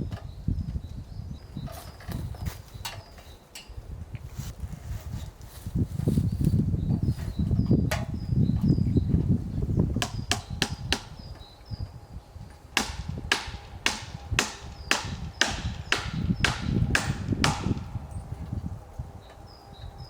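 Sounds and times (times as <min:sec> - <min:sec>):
small birds chirping: 0:00.0 - 0:03.9, 0:05.5 - 0:20.0
hammer driving a nail: 0:10.0 - 0:11.2, 0:12.8 - 0:17.9.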